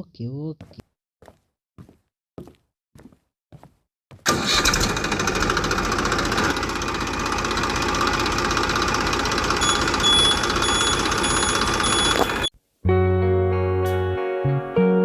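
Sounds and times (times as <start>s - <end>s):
small motor running: 4.6s - 12.5s.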